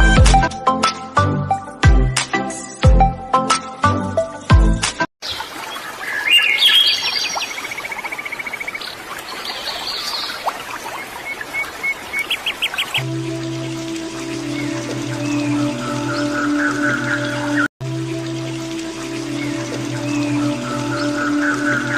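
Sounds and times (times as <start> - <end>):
music: 0.0 - 5.1, 13.0 - 21.9
birds calling and chirping: 5.2 - 17.7, 18.9 - 21.9
steady outdoor hiss: 5.2 - 21.9.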